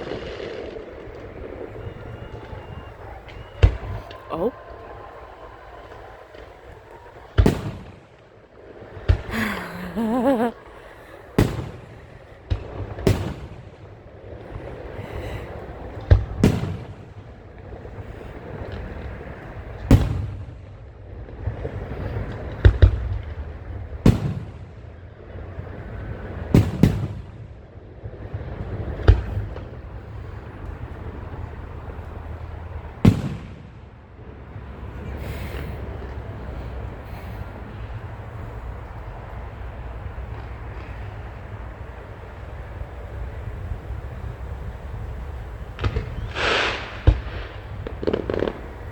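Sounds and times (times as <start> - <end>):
fireworks bangs with echo: 0.0 - 9.5, 11.3 - 35.2, 44.5 - 48.9.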